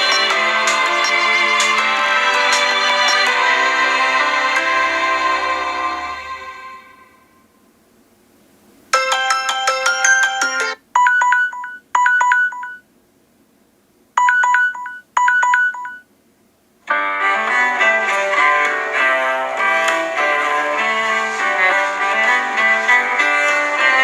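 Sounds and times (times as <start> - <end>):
ringtone tune: 0.0 - 4.8, 9.0 - 12.8, 14.2 - 16.0
bright electronic notes: 0.0 - 7.1
phone chime phrase: 9.0 - 12.8.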